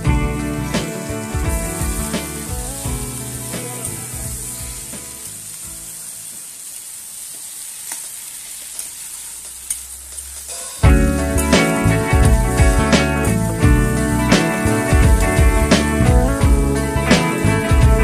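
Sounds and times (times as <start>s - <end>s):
background music: 0.0s - 6.0s, 10.8s - 18.0s
food sizzling in a pan: 0.0s - 18.0s.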